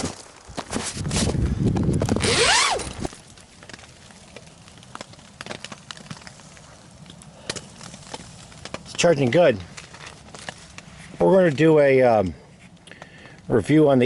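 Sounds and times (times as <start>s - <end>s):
loud rustling and scraping: 0.0s - 3.2s.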